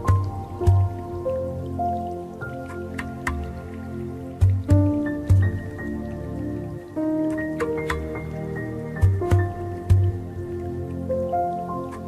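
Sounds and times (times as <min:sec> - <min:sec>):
drip-like plinks: 0:00.0 - 0:12.0
deep struck notes: 0:04.4 - 0:05.9, 0:09.0 - 0:10.6.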